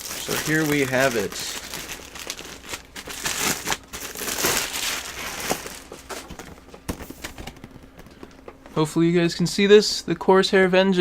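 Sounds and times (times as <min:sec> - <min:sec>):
packaging crinkling: 0:00.0 - 0:08.3.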